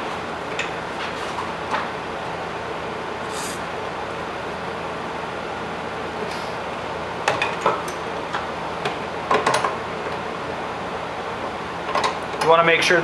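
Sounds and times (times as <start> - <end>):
low background hum: 0.0 - 13.0.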